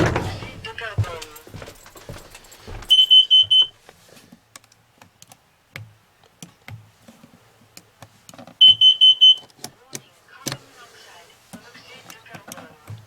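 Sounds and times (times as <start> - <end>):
faint clicks and taps: 0.0 - 8.6
carbon monoxide alarm beeps: 2.7 - 3.8, 8.6 - 9.5.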